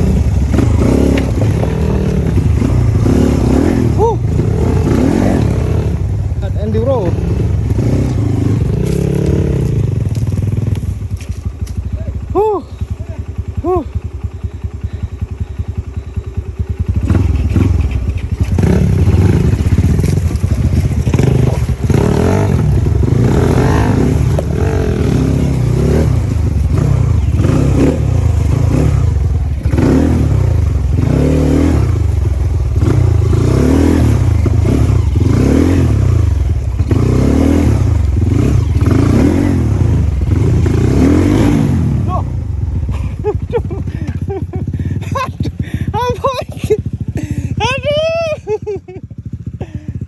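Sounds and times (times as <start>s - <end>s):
motorcycle engine revving: 0.0s - 50.0s.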